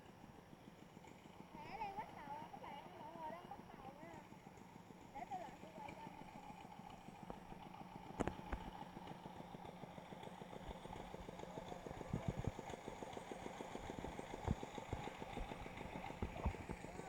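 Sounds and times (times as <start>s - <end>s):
small engine running: 0.0s - 17.0s.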